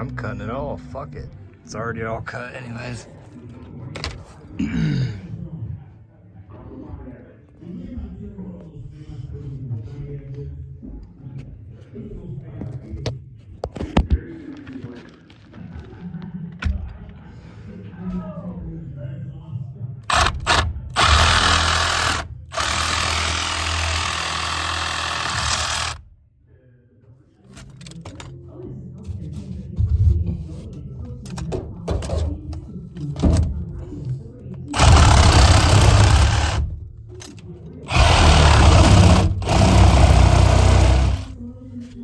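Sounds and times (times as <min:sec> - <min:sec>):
power tool running: 0:20.1 - 0:26.0, 0:34.7 - 0:36.8, 0:37.9 - 0:41.4
reciprocating saw cutting: 0:20.1 - 0:26.0, 0:34.8 - 0:36.8, 0:37.9 - 0:41.4.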